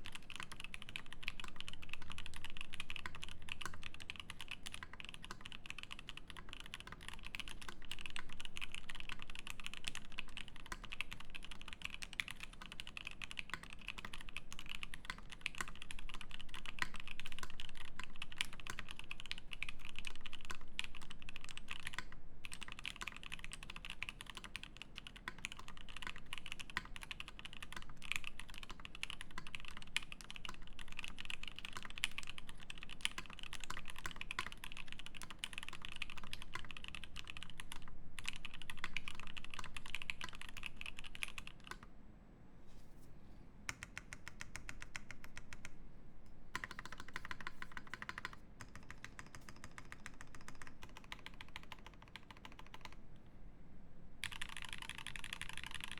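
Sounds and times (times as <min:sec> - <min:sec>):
fast typing on mechanical keyboard: 0:00.0 - 0:41.9, 0:43.7 - 0:45.7, 0:46.5 - 0:53.0, 0:54.2 - 0:55.9.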